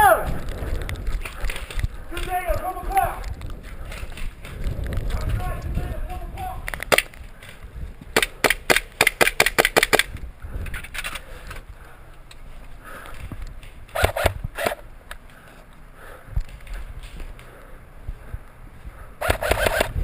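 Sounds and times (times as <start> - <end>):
airsoft gun shots: 8.2 - 10.1, 13.9 - 14.8, 19.2 - 20.0.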